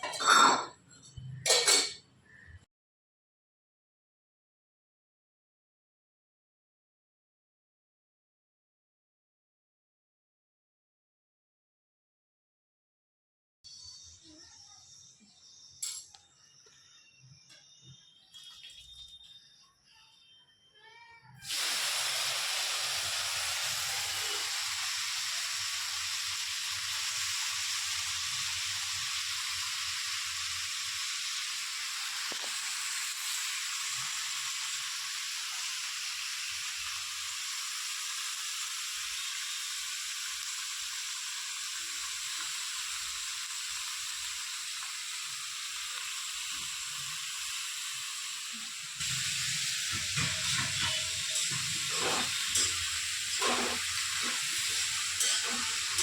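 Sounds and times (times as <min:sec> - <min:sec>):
food sizzling in hot oil: 0:21.4 - 0:56.0.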